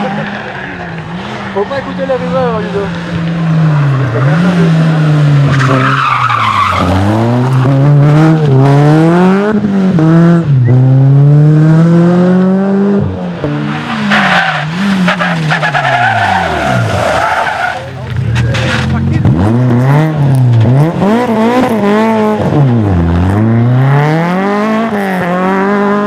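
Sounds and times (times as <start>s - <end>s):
tyres squealing: 0.0s - 8.6s, 13.5s - 19.9s
rally car engine accelerating: 0.0s - 26.0s.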